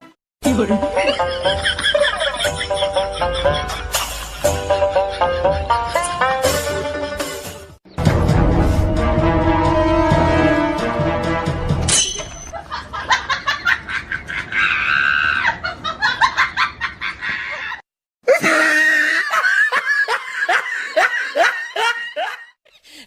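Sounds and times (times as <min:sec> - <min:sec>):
person laughing hard: 0:00.8 - 0:06.4, 0:12.5 - 0:22.6.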